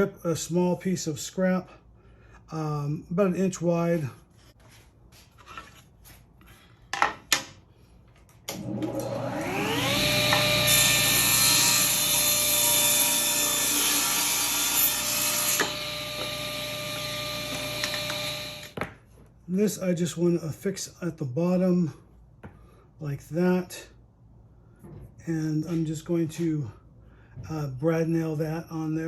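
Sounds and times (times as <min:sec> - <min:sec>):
table saw motor whine: 0:08.5 - 0:18.8
saw blade cutting wood: 0:08.9 - 0:18.8.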